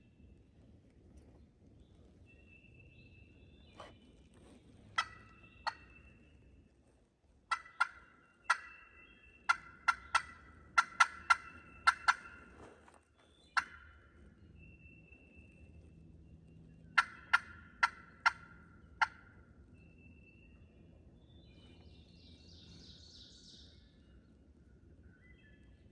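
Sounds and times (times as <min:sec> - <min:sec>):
turkey yelping and clucking: 0:05.0 - 0:06.0, 0:07.5 - 0:12.5, 0:13.5 - 0:14.0, 0:16.9 - 0:19.4.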